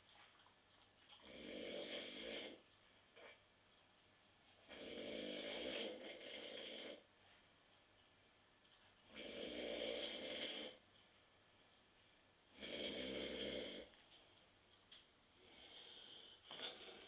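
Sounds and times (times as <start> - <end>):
quiet breathing: 1.1 - 3.4, 4.5 - 7.6, 8.9 - 14.6, 15.2 - 17.0
man snoring: 1.3 - 2.6, 4.7 - 7.0, 9.1 - 10.8, 12.6 - 13.9.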